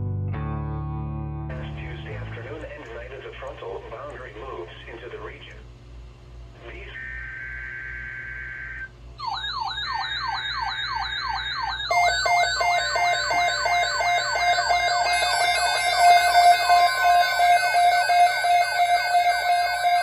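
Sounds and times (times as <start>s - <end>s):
steady high tone: 6.6s - 20.0s
pulsing lower tone: 6.9s - 20.0s
fast electronic warble: 7.0s - 20.0s
synthetic siren sweeping downward: 7.0s - 20.0s.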